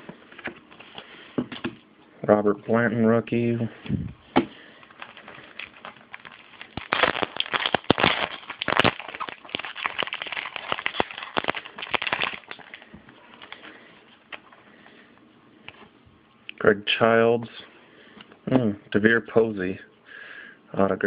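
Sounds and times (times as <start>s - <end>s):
trading cards rustling and snapping: 4.4s - 14.5s.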